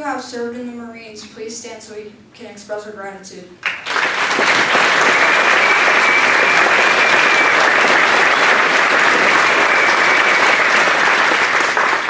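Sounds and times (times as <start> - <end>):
audience applauding: 3.6 - 12.0.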